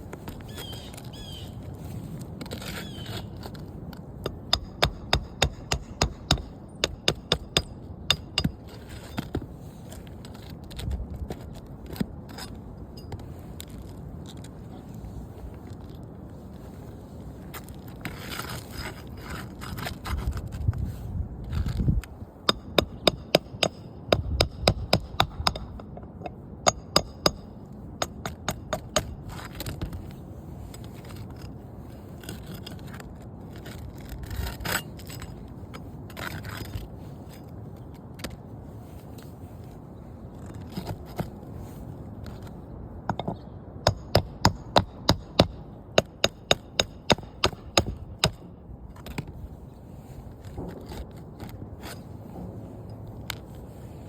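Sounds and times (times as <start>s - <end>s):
hammer strikes on roof shingles: 4.3s - 9.5s, 22.5s - 25.8s, 43.2s - 49.3s
scraping and rustling: 13.2s - 22.0s.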